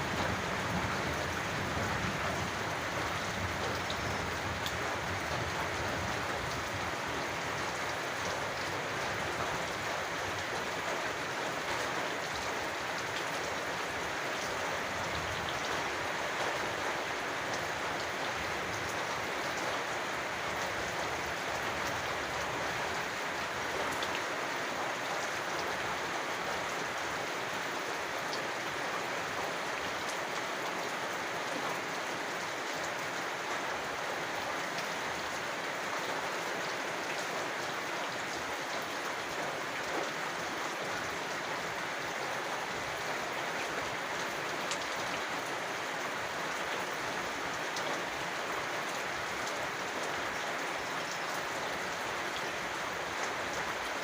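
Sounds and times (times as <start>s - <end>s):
raindrops ticking on surface: 0.0s - 27.6s, 36.6s - 54.0s
steady rain falling: 0.0s - 54.0s.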